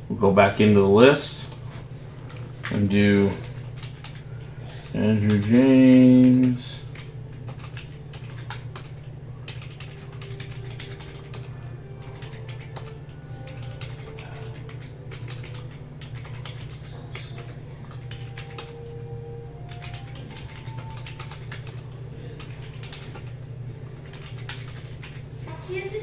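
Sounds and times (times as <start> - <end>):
low electrical hum: 0.0 - 26.0
keyboard typing clicks: 3.4 - 18.9, 19.6 - 23.4, 24.0 - 25.2.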